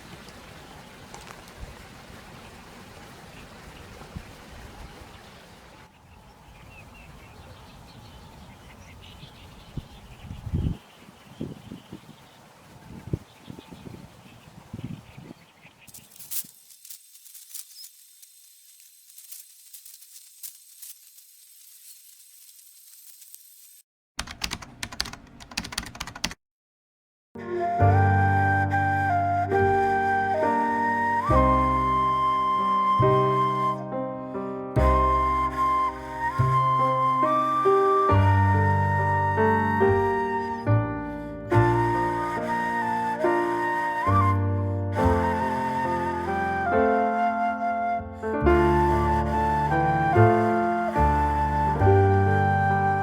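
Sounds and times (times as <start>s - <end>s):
faint hiss: 14.3s - 23.8s.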